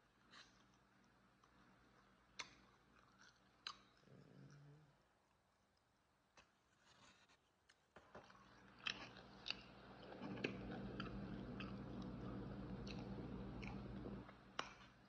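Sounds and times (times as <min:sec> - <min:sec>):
chewing crunchy food: 0:00.1 - 0:15.0
steady low hum: 0:08.3 - 0:15.0.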